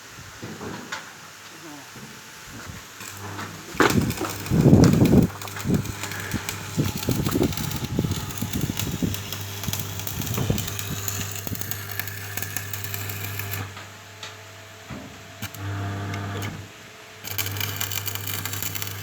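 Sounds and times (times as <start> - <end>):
electrical hum: 1.6 - 19.0
welding arc crackling: 2.9 - 14.0, 15.4 - 19.0.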